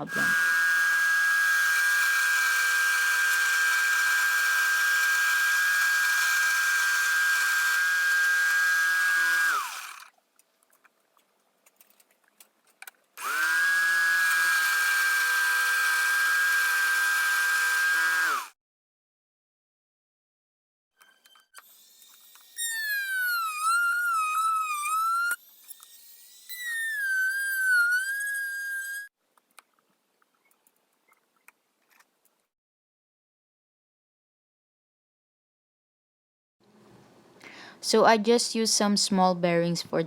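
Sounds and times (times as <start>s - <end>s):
electric jigsaw running: 0.1s - 10.1s, 13.2s - 18.6s.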